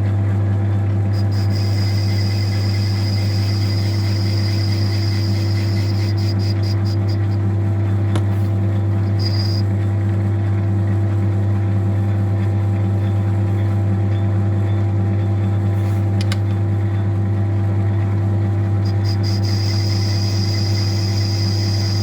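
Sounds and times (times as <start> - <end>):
metal lathe humming: 0.8 - 10.9, 18.6 - 22.0
high-pitched whine: 1.1 - 9.7, 18.8 - 22.0.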